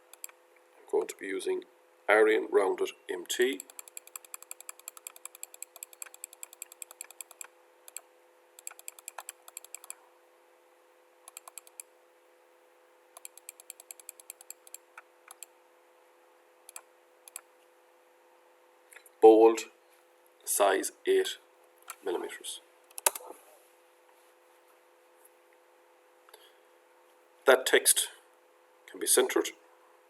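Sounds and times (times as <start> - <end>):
computer input device clicks: 0.0 - 0.4, 3.5 - 8.0, 8.6 - 10.0, 11.3 - 11.9, 13.2 - 15.5, 16.7 - 17.4, 22.9 - 23.2
faint steady hum: 0.0 - 30.0.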